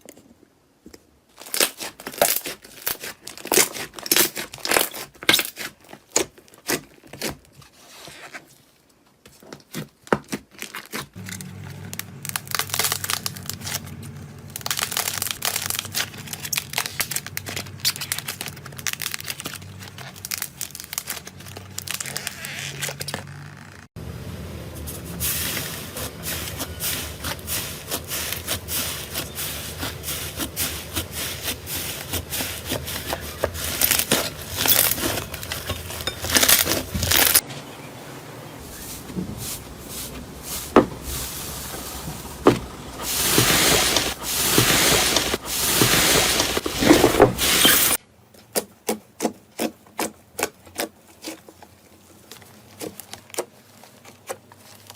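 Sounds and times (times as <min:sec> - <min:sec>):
slime crackling and popping: 0:10.2 - 0:23.2.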